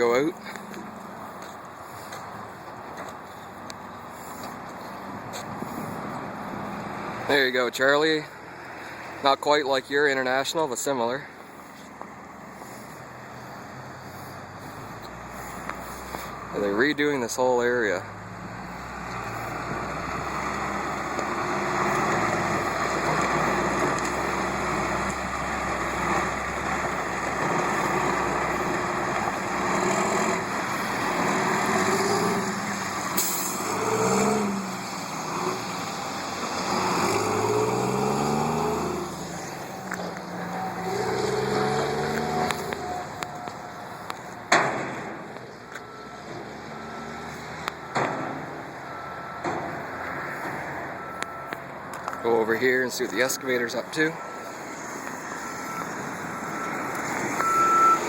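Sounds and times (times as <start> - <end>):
diesel machinery engines revving: 0.0 - 58.0
faint beeping: 45.2 - 48.0, 48.6 - 58.0.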